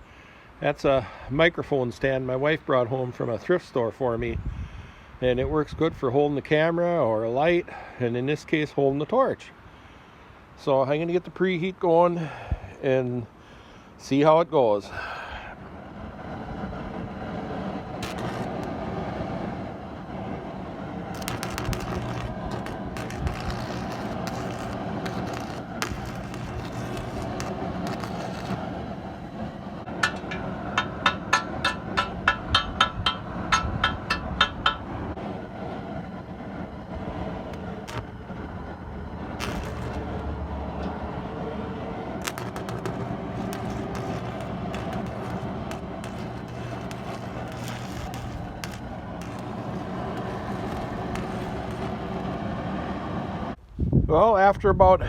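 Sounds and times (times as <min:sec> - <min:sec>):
propane burners running: 0:14.8 - 0:53.6.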